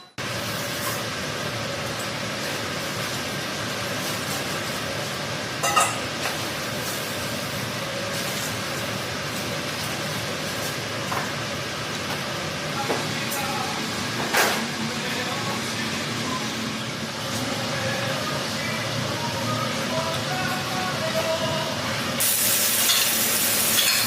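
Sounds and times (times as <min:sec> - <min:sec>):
gas burner roaring: 0:00.1 - 0:24.0
utensil clanking on metal: 0:05.6 - 0:06.4, 0:22.8 - 0:24.0.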